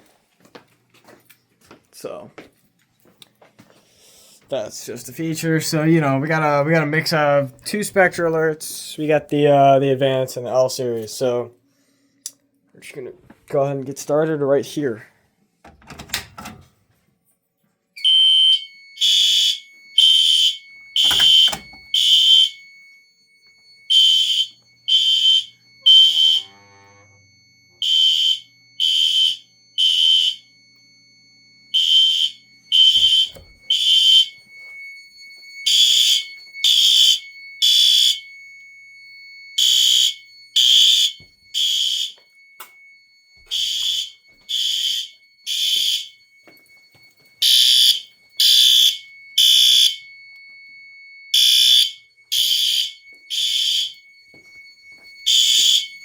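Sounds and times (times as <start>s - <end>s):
fire alarm horn blasts: 18.0s - 56.0s
faint steady high tone: 22.6s - 27.8s, 38.2s - 44.5s, 45.1s - 53.3s, 53.9s - 56.0s.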